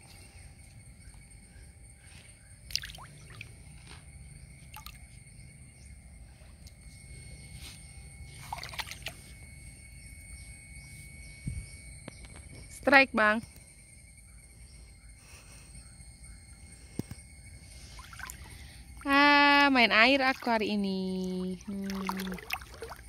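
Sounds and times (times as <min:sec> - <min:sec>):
water dripping and splashing: 0:02.7 - 0:03.5, 0:18.0 - 0:23.0.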